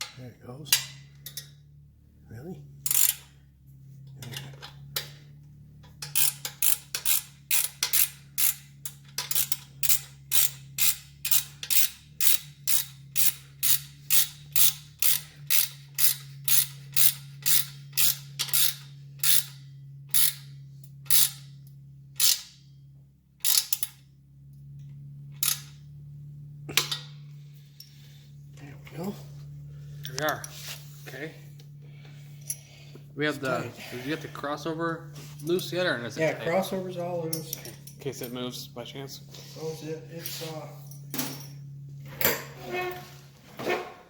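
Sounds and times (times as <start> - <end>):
ratchet wrench clicking: 2.8 - 3.4, 5.8 - 21.6, 22.2 - 22.6, 23.4 - 24.0, 25.4 - 25.8.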